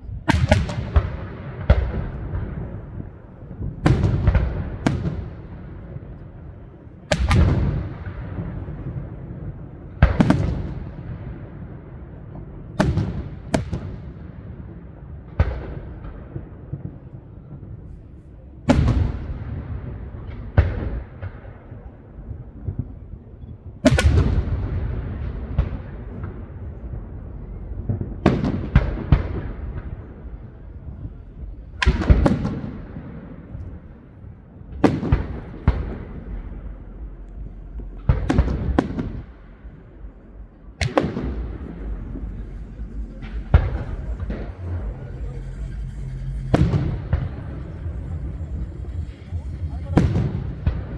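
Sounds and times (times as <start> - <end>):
firework crackling: 26.0 - 50.9
firework shells bursting: 34.8 - 50.9.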